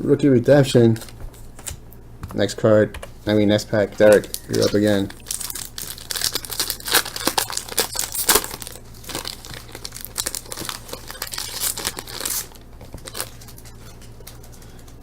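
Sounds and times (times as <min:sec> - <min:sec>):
wrapper tearing and crinkling: 0:04.2 - 0:13.7.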